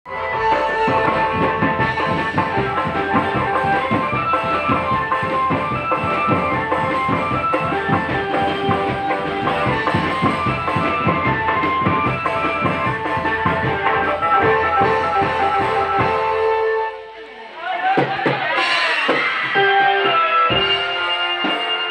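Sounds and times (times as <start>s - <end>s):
sustained melody line: 0.1s - 17.4s
rapid drumming: 0.1s - 21.9s.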